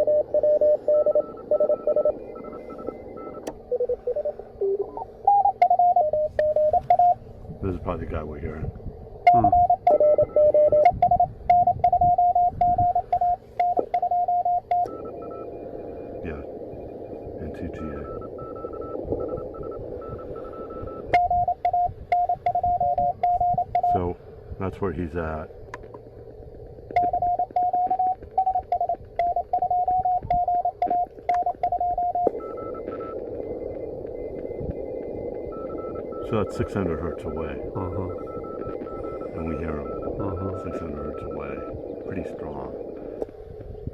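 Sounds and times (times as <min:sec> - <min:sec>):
morse code beeping tone: 0:00.0 - 0:07.2, 0:09.2 - 0:24.0, 0:26.9 - 0:43.3
lower-pitched morse code signal: 0:00.0 - 0:08.6, 0:09.2 - 0:24.1, 0:26.9 - 0:43.9
radio band hiss: 0:00.0 - 0:10.9, 0:14.9 - 0:27.2, 0:32.2 - 0:43.9.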